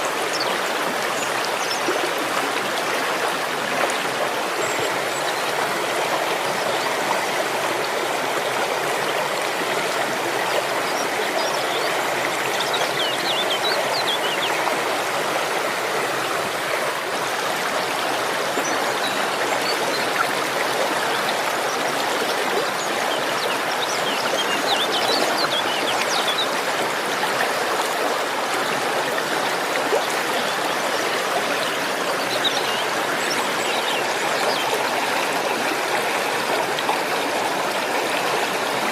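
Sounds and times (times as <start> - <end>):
waterfall rushing: 0.0 - 38.9.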